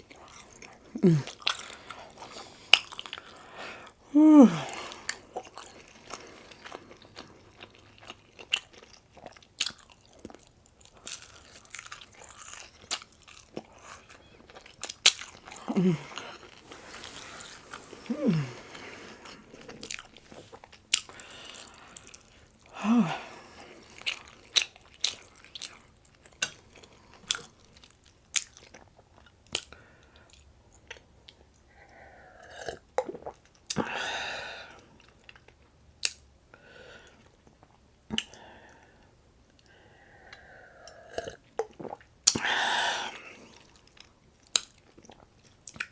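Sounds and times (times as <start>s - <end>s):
chewing and crunching food: 0.0s - 4.0s, 4.6s - 34.0s, 34.6s - 45.9s
person humming: 0.9s - 1.3s, 4.1s - 5.0s, 15.6s - 16.2s, 17.9s - 19.0s, 22.8s - 23.3s
breathy rush: 1.0s - 1.3s, 3.6s - 5.1s, 15.6s - 19.8s, 22.8s - 23.6s.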